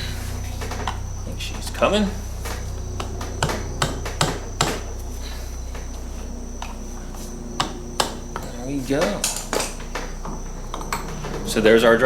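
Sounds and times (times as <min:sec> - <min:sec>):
steady low hum: 0:00.0 - 0:12.0
metallic clinks and knocks: 0:05.7 - 0:11.6.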